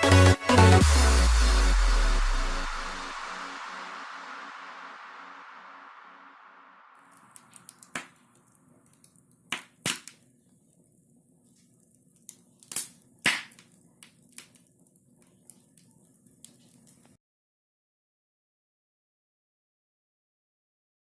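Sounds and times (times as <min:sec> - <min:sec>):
sharp cracks and pops: 0:07.0 - 0:17.2.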